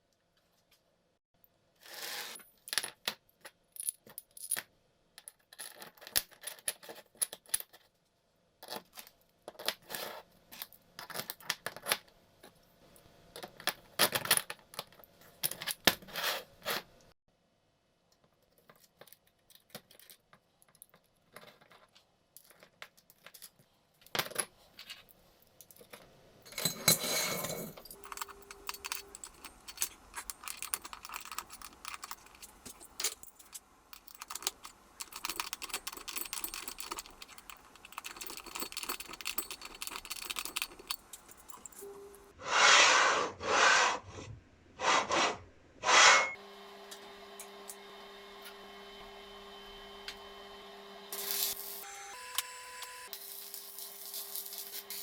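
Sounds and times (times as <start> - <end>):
small metal parts clinking: 25.7 - 41.9, 51.2 - 55.0.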